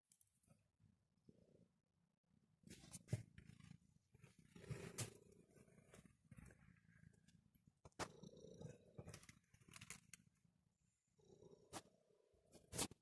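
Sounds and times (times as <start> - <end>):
cat purring: 3.0 - 12.6.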